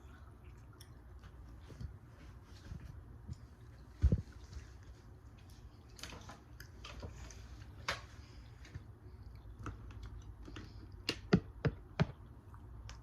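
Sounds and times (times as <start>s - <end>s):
person chewing food: 3.0s - 13.0s.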